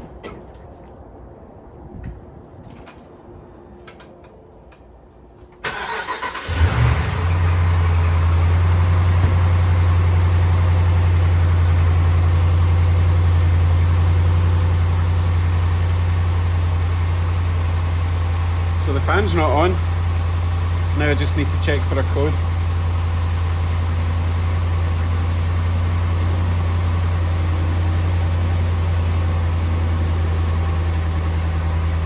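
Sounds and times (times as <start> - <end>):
starter cranking engine: 5.6 - 11.8, 18.8 - 22.6
engine idling: 5.6 - 32.0.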